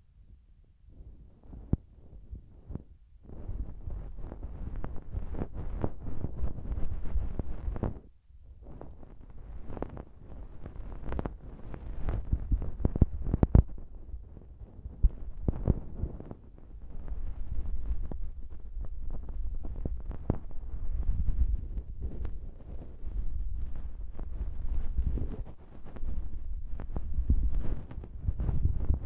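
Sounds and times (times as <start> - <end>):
puff brushed over microphone: 14.8 - 29.0.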